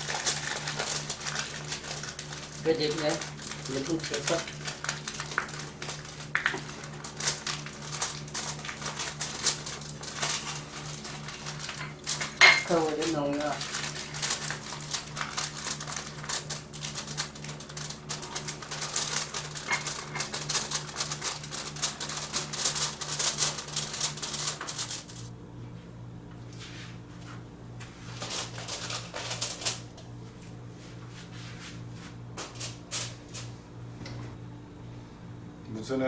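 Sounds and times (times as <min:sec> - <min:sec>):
kitchen utensils clattering: 0:00.0 - 0:25.3, 0:28.2 - 0:30.0.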